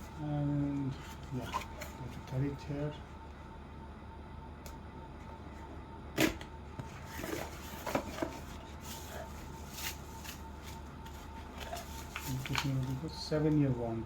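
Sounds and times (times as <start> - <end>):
cardboard and paper packaging rustling: 0.0 - 2.7, 6.8 - 13.7.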